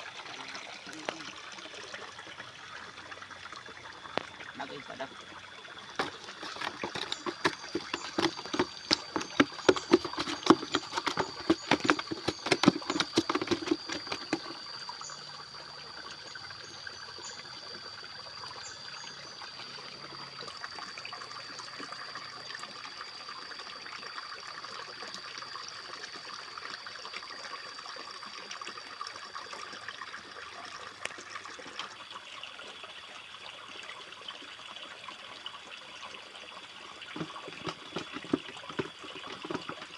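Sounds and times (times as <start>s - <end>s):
water trickling into pond: 0.0s - 39.9s
irregular splashes and knocks: 5.9s - 14.6s, 37.2s - 39.9s.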